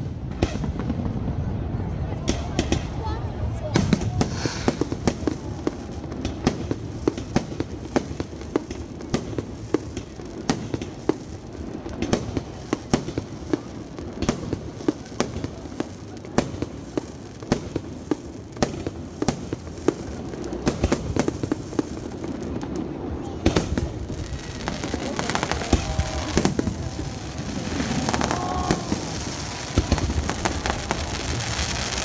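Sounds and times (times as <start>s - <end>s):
fireworks shells bursting: 3.8s - 5.4s
rumble of distant booms: 23.4s - 31.8s.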